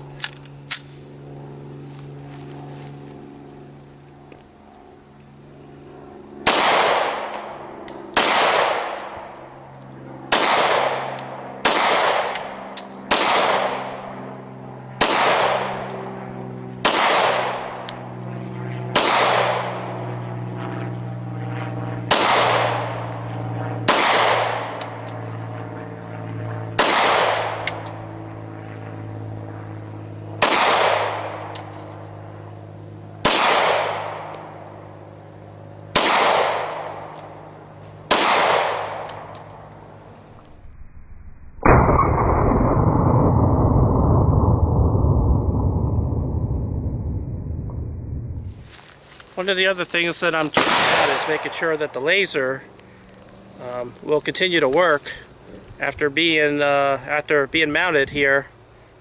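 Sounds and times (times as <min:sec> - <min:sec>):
pistol shots with echo: 0:06.4 - 0:07.3, 0:08.2 - 0:09.2, 0:10.3 - 0:12.5, 0:13.1 - 0:14.0, 0:15.0 - 0:15.7, 0:16.8 - 0:17.8, 0:18.9 - 0:19.8, 0:22.1 - 0:23.0, 0:23.9 - 0:24.8, 0:26.8 - 0:27.8, 0:30.4 - 0:31.5, 0:33.2 - 0:34.4, 0:35.9 - 0:37.1, 0:38.1 - 0:39.3, 0:50.6 - 0:52.0.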